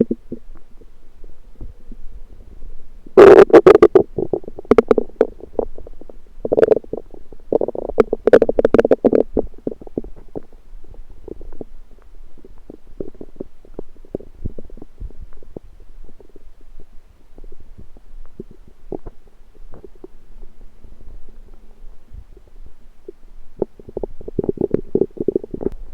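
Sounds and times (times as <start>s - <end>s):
stomach rumbling and gurgling: 0.0s - 25.9s.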